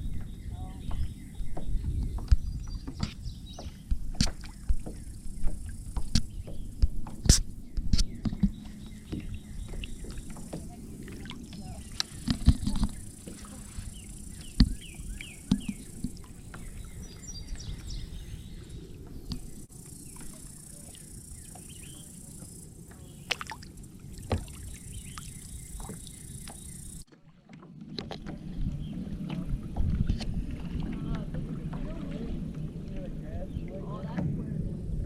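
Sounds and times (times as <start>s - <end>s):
paddle knocking on hull: 0.0s - 18.1s, 19.3s - 20.9s, 21.5s - 35.0s
low wind rumble: 0.0s - 27.1s, 28.4s - 35.0s
paddle splashing and dripping: 0.0s - 35.0s
faint bird chirps: 11.4s - 23.4s.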